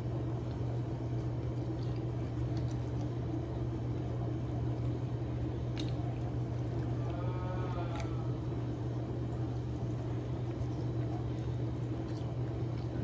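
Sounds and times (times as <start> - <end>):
steady low hum: 0.0 - 13.0
mouth noises of eating: 4.5 - 13.0.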